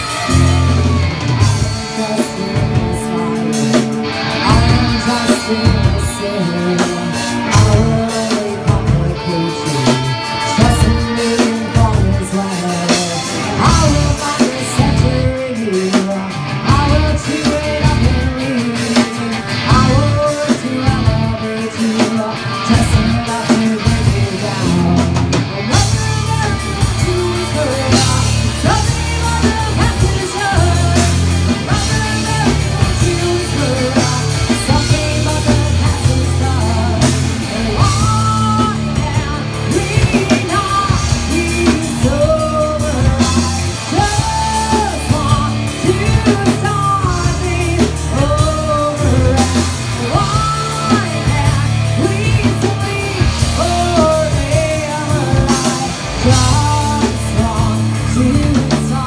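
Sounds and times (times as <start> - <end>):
bending guitar melody: 0.0 - 59.0
live rock band playing: 0.0 - 59.0.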